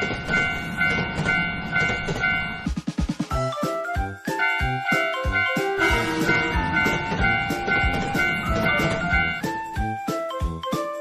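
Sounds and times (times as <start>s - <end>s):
railroad crossing bell clanging: 0.0s - 2.7s, 4.3s - 10.0s
train rumble: 0.0s - 3.6s, 4.3s - 10.1s
melody over a drum beat: 0.0s - 11.0s.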